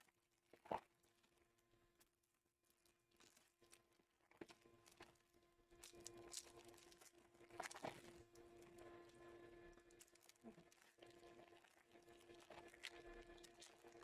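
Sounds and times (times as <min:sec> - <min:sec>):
low electrical hum: 0:04.6 - 0:14.0.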